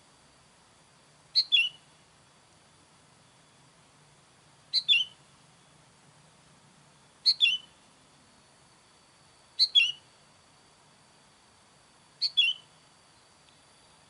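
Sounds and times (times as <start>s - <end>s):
bird calling: 1.3s - 2.0s, 4.7s - 5.3s, 7.2s - 7.8s, 9.6s - 10.1s, 12.2s - 13.2s.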